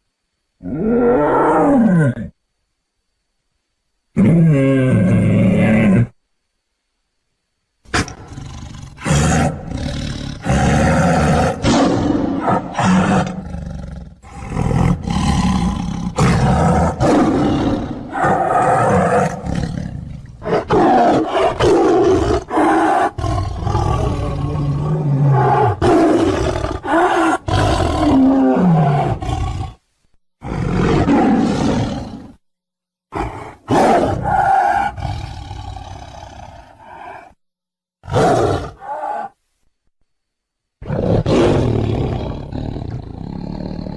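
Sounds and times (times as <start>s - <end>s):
creature roars and growls: 0.6s - 2.4s, 7.9s - 29.8s, 30.4s - 32.4s, 33.1s - 37.4s, 38.0s - 39.4s, 40.8s - 43.9s.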